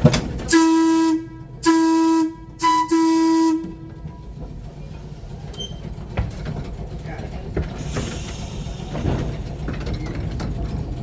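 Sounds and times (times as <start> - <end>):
trolley air whistle blasts: 0.5 - 3.8.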